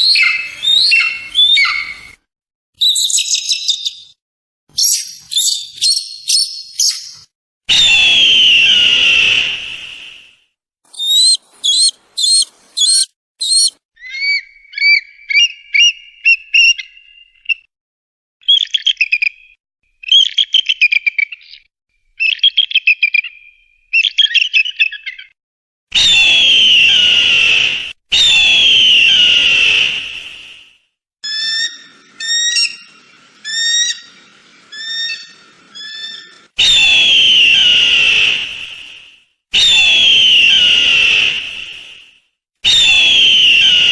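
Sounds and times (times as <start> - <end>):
eagle screaming: 0.0 - 2.1, 10.9 - 15.0, 31.2 - 38.4, 39.6 - 41.4, 42.6 - 43.9
eagle chittering: 10.9 - 14.4.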